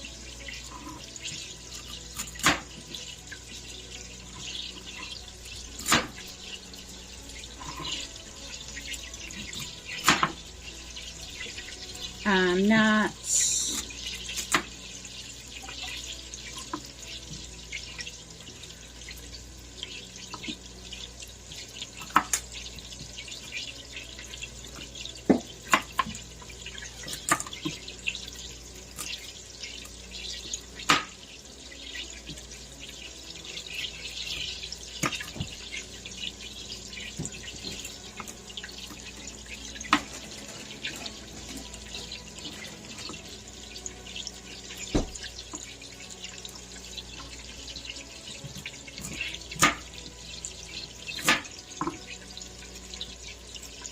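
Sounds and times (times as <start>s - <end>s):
tap running into sink: 24.8s - 26.2s, 44.7s - 45.7s.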